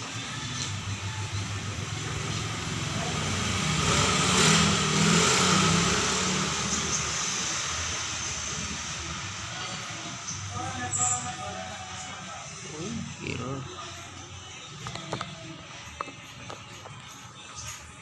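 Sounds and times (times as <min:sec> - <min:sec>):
engine running: 0:00.0 - 0:10.6.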